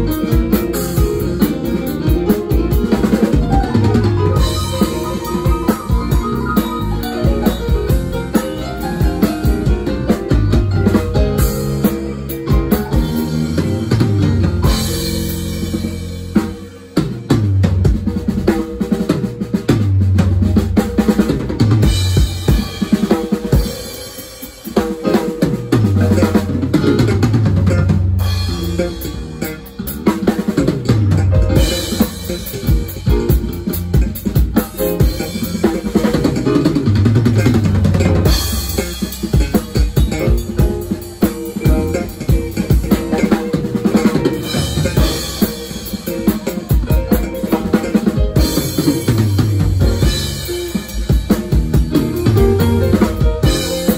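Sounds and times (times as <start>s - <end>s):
drum kit kick snare and rimshots: 0.0s - 53.9s
live band playing instrumental: 0.0s - 53.9s
gliding bass line: 3.1s - 8.3s.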